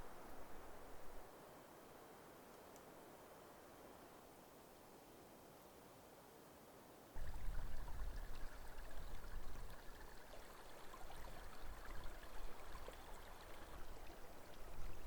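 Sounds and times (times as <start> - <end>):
faint ticks: 2.5 - 3.0
wind buffeting microphone: 7.2 - 10.1.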